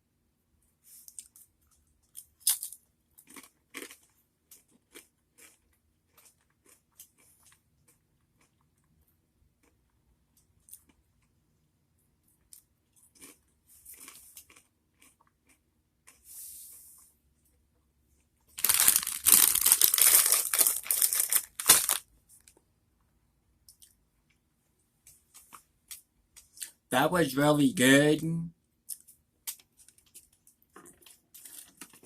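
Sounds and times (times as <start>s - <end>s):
crunching pretzel: 1.0s - 8.9s, 12.4s - 16.2s, 18.5s - 22.1s
chewing: 3.2s - 9.0s, 12.4s - 16.3s.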